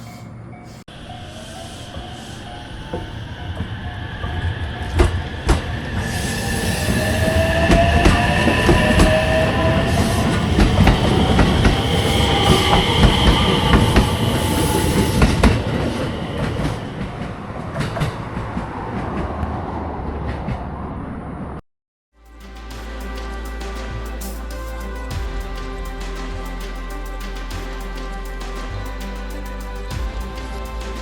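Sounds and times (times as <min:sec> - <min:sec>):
train wheels squealing: 0:00.0 - 0:18.2
train wheels clacking over rail joints: 0:02.0 - 0:06.8.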